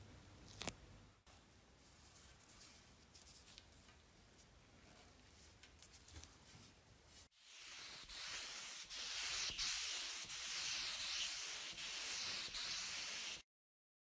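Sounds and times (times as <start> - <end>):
abrasive sanding scratching: 7.4 - 13.4.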